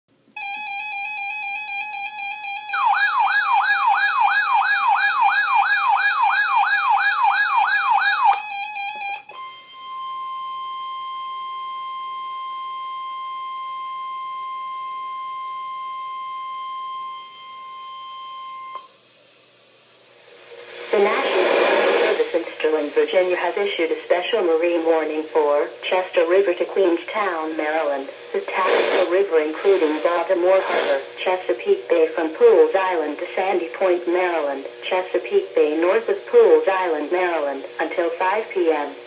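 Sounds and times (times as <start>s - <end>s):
steady warning alarm tone: 0.4s - 18.9s.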